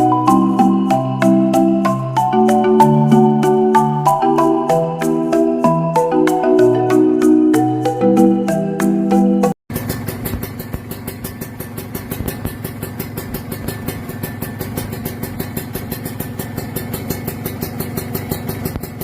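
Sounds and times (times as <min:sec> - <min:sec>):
motorcycle engine idling: 0:00.0 - 0:06.1, 0:07.1 - 0:19.0
marimba music: 0:00.0 - 0:09.6.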